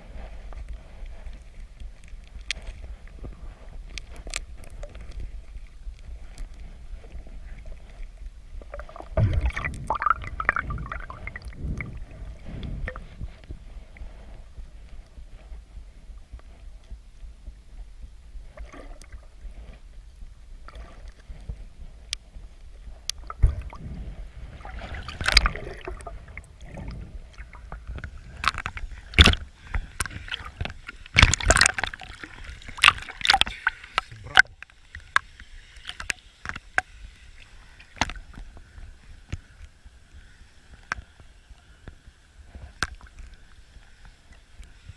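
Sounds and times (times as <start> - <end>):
low steady rumble: 0.0 - 35.5
water splashing and sloshing: 0.0 - 44.9.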